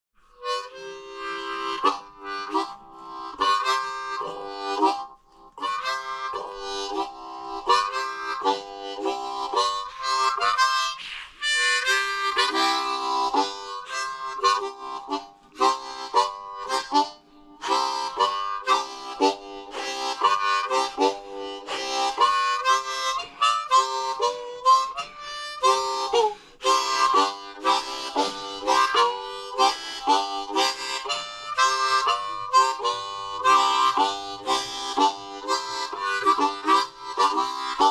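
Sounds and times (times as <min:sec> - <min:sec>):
blues harmonica playing: 0:00.2 - 0:37.9.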